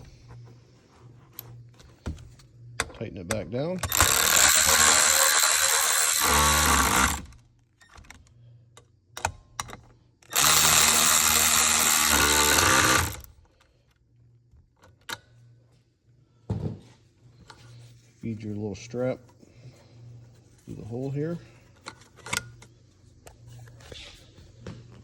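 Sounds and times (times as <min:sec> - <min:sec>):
power driver running: 0:03.8 - 0:07.4, 0:10.2 - 0:13.3.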